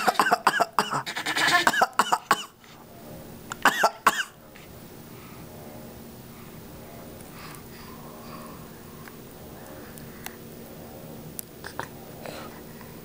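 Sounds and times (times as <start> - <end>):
baby coughing: 0.0 - 2.6, 3.6 - 4.4
man coughing: 0.0 - 2.6, 3.7 - 4.4.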